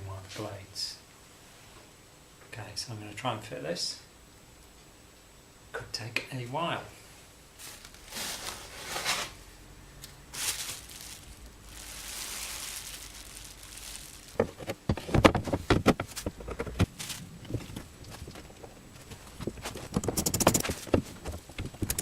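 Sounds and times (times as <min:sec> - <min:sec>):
soft hiss: 0:00.0 - 0:14.7
rustling and scraping of parts: 0:07.6 - 0:22.0
sharp knocks and clicks: 0:19.4 - 0:22.0.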